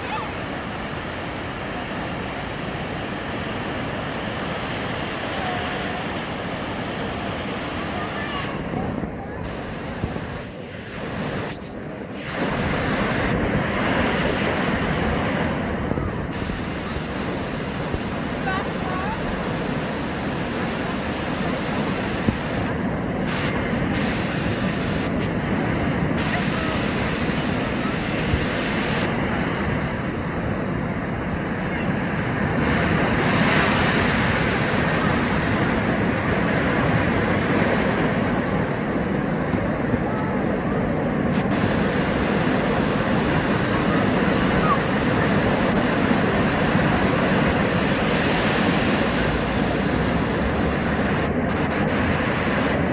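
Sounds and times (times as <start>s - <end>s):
ocean surf on the beach: 0.0s - 52.9s
wind buffeting the microphone: 0.0s - 52.9s.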